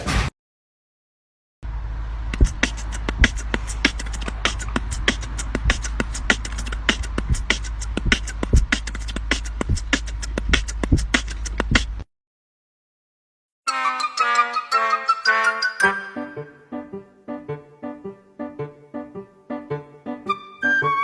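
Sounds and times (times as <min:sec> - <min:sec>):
steady low hum: 0:01.7 - 0:12.0
sharp clicks and taps: 0:02.3 - 0:12.0.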